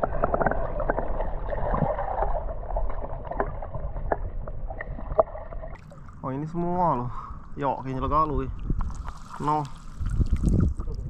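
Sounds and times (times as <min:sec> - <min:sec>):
river water splashing: 0:08.8 - 0:10.8.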